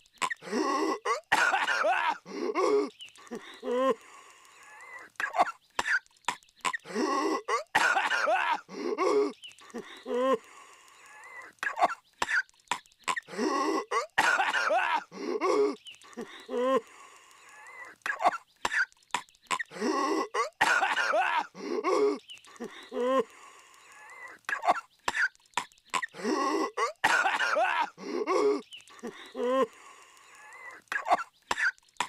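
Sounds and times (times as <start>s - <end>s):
cartoon character coughing: 0.2s - 2.9s, 5.2s - 6.0s, 6.7s - 9.4s, 13.1s - 15.8s, 18.1s - 18.9s, 19.5s - 22.2s, 24.5s - 25.3s, 26.0s - 28.6s, 31.0s - 31.8s
raspy wheezing gasps: 0.3s - 6.1s, 6.7s - 12.5s, 13.1s - 25.4s, 26.0s - 31.8s.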